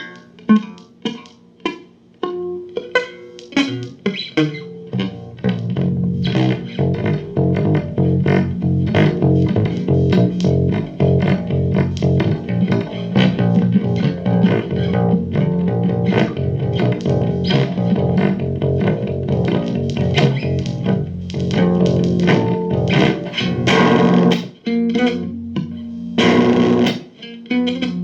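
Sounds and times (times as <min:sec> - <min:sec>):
guitar and bass groove: 0:00.0 - 0:28.0.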